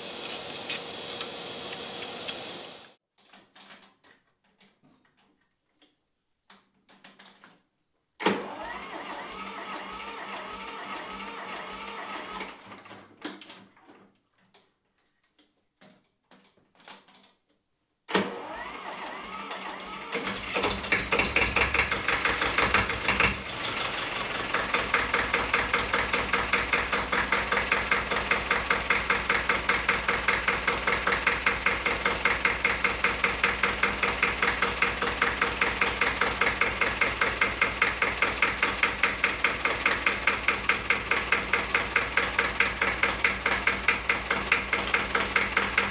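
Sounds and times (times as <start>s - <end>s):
engine starting and idling: 8.2s - 13.0s, 18.1s - 45.9s.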